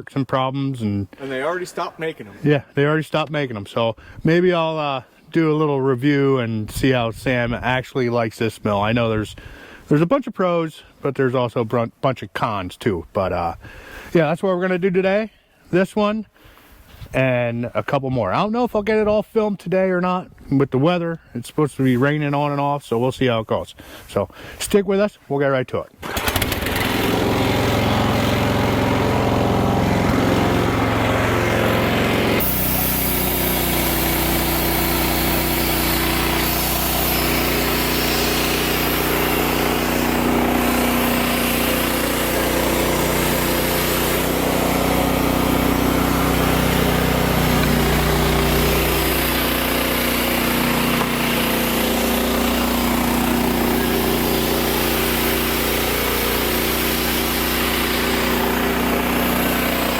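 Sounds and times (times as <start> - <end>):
bandsaw mill running: 26.0 - 59.9.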